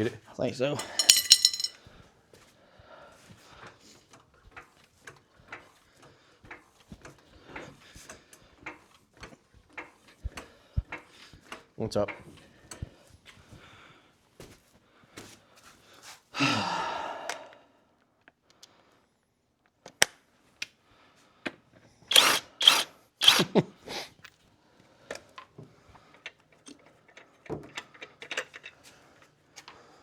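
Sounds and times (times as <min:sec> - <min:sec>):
power tool running: 0:22.1 - 0:23.6.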